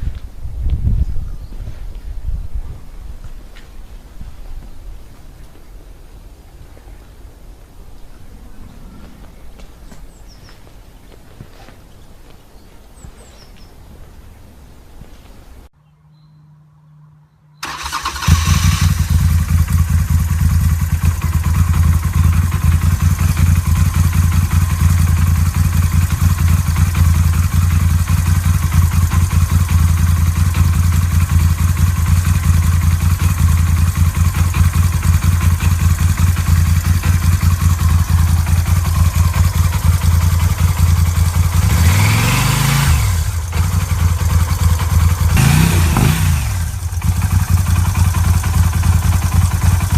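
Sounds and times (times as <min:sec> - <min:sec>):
engine revving: 0:17.6 - 0:49.9
motorcycle engine idling: 0:17.6 - 0:49.9
motorcycle engine starting: 0:17.6 - 0:49.9.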